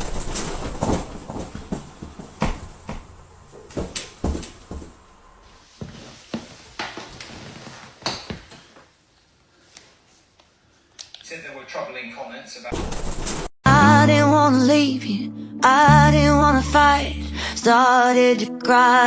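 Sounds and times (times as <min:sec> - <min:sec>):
objects knocking and clattering: 0:00.0 - 0:04.5, 0:12.8 - 0:13.5.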